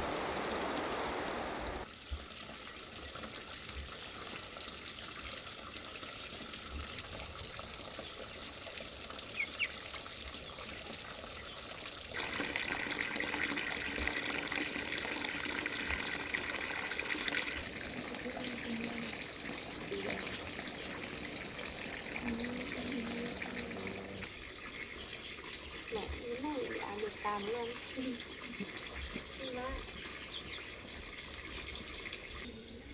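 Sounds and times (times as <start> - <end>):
running water rushing: 0.0 - 32.5.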